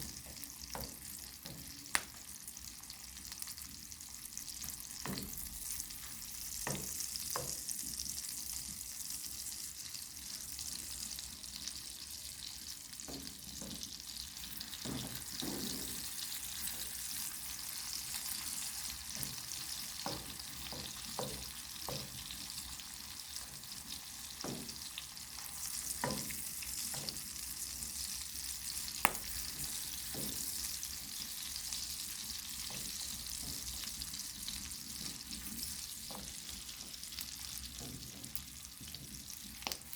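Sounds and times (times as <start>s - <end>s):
food sizzling in a frying pan: 0.0s - 39.9s
utensil scraping and tapping: 29.0s - 30.6s, 32.6s - 34.0s.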